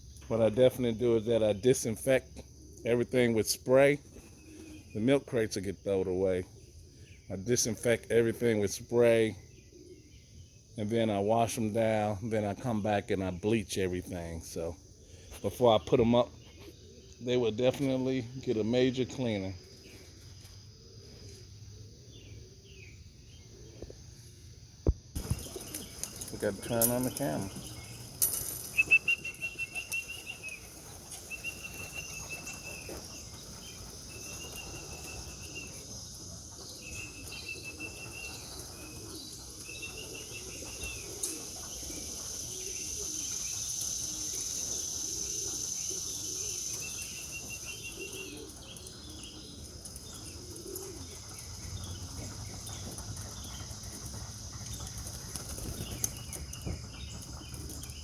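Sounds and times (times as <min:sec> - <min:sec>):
small bird chirping: 0:25.1 - 0:58.0
pigeon wings flapping: 0:25.2 - 0:35.7, 0:52.0 - 0:56.5.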